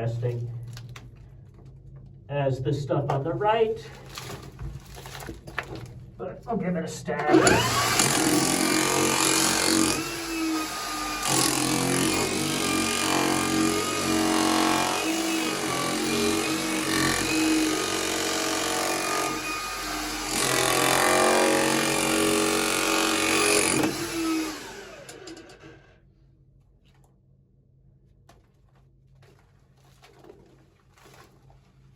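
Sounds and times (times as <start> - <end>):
demolition hammer chiselling rock: 7.2 - 25.3.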